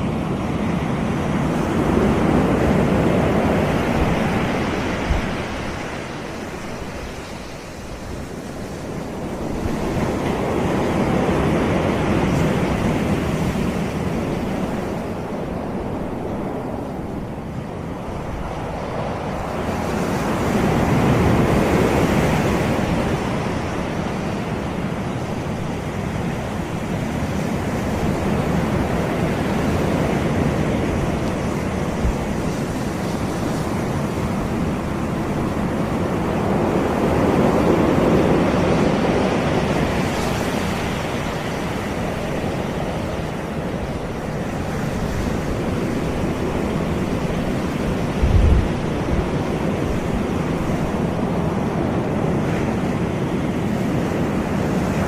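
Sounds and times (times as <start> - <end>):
sea waves breaking on beach: 0.0 - 55.0.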